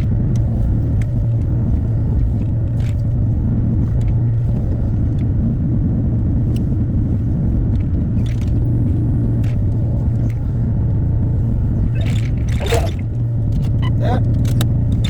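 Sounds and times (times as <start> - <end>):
faint work ticks: 0.0 - 5.4, 7.7 - 15.0
excavator diesel engine running: 8.1 - 15.0.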